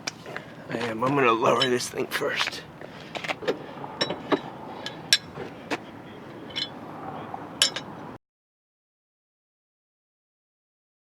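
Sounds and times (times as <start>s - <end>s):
car jack metal clinks: 1.0s - 2.0s, 3.1s - 8.2s.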